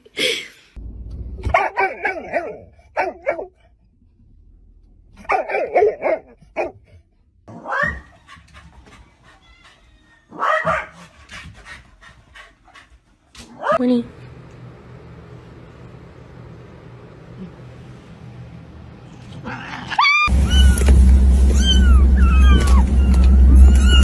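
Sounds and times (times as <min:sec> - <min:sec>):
dog barking and yipping: 0:01.5 - 0:03.6, 0:05.2 - 0:06.8, 0:07.5 - 0:11.1.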